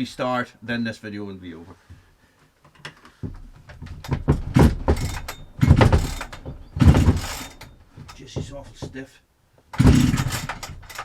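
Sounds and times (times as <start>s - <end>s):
chainsaw recoil starter pulls: 3.3s - 9.0s, 9.7s - 11.0s.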